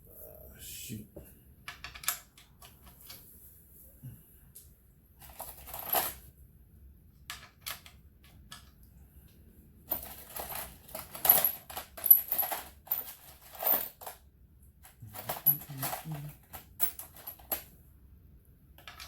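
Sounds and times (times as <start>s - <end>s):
metal tools clinking: 14.9s - 17.6s.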